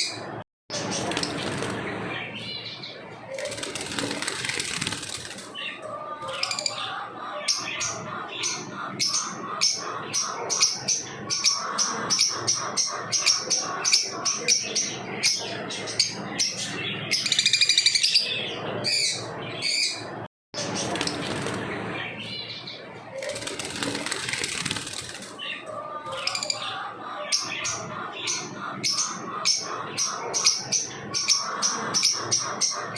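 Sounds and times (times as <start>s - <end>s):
birds chirping high: 0.0s - 32.9s.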